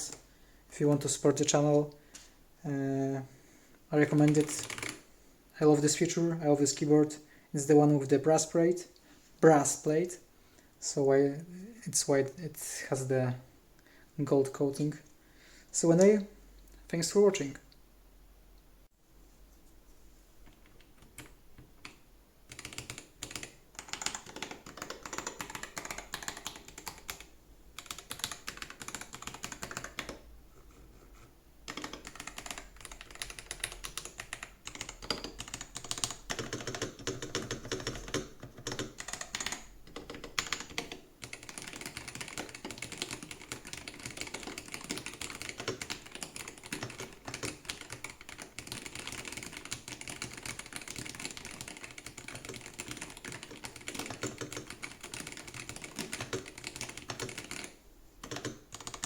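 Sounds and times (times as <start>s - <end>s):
typing on a keyboard: 4.0s - 5.0s, 20.8s - 30.2s, 31.7s - 59.0s.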